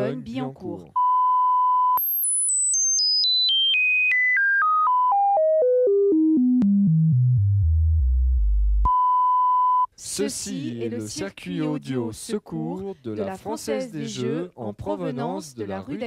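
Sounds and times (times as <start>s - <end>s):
tone sweep stepping down: 4.4s - 9.1s.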